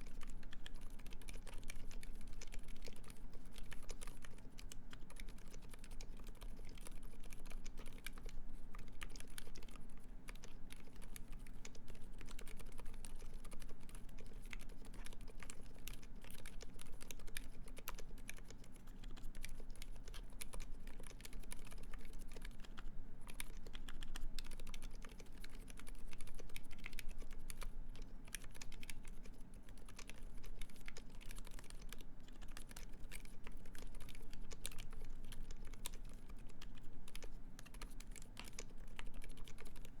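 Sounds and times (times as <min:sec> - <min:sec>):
quiet mechanical keyboard typing: 0:00.0 - 0:40.0.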